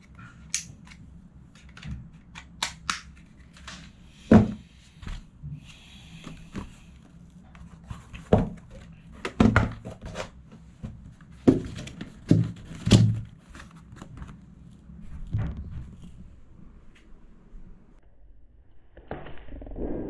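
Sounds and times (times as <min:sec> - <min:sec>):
packaging knocks and thunks: 0:11.5 - 0:13.3.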